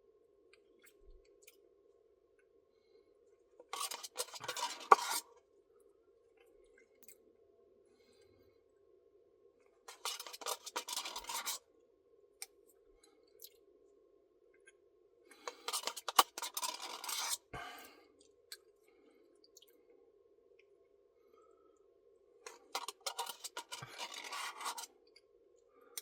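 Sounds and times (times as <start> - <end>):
scratchy rustling and scraping: 3.7 - 5.3, 9.9 - 11.6, 15.5 - 17.5, 22.5 - 24.9.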